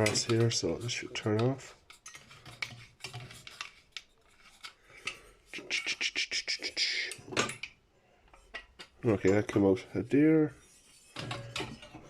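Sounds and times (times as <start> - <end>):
metal clicking and scraping: 0.0 - 5.8, 10.8 - 12.0.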